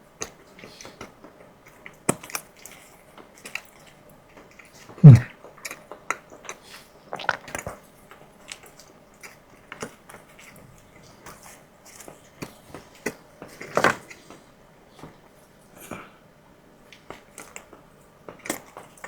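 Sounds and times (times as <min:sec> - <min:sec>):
mouth clicks and smacks: 0:05.0 - 0:05.3, 0:07.2 - 0:07.8
person chewing food: 0:05.1 - 0:05.3, 0:07.2 - 0:07.7.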